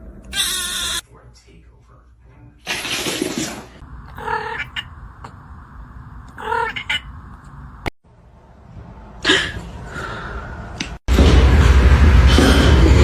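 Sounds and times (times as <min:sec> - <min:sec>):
cat meowing: 0:00.3 - 0:01.0, 0:04.0 - 0:05.4, 0:06.3 - 0:07.2.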